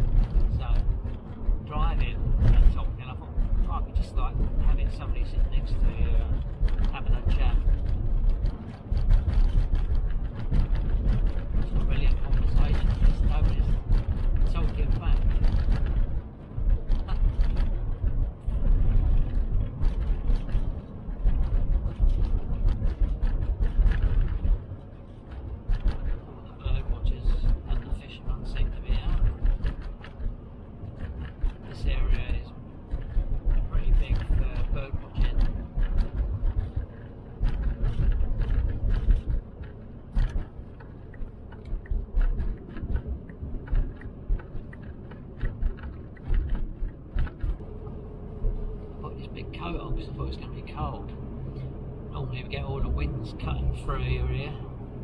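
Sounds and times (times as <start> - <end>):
knocks and rattles: 0.0 - 48.8
van engine and road rumble: 0.0 - 55.0.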